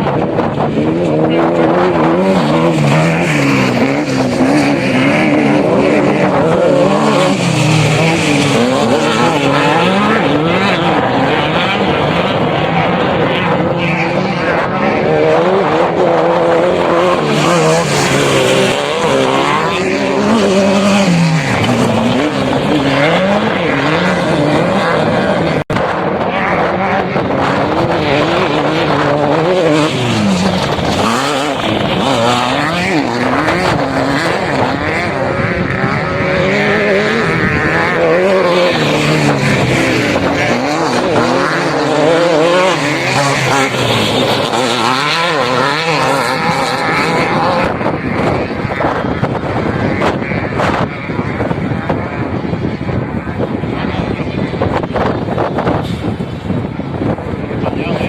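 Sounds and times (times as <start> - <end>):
off-road vehicle engine revving: 0.0 - 58.0.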